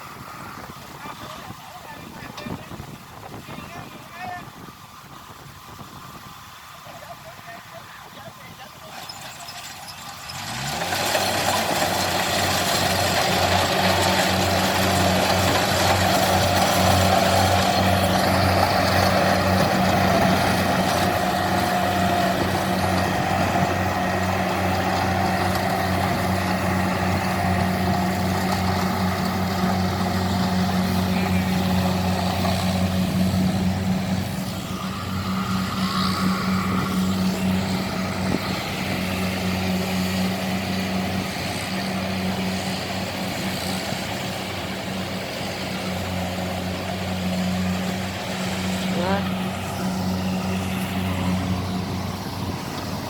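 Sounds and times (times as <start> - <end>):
combine harvester engine droning: 0.0 - 53.0.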